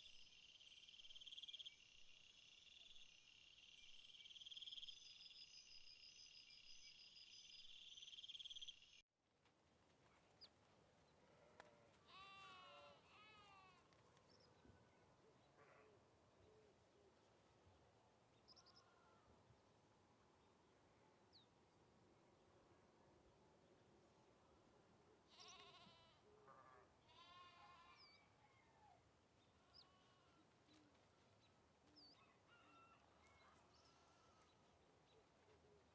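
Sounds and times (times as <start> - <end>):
insects chirping: 0.0 - 9.0
animal bleating: 11.6 - 13.8, 25.3 - 28.2, 29.6 - 30.5, 33.8 - 34.6.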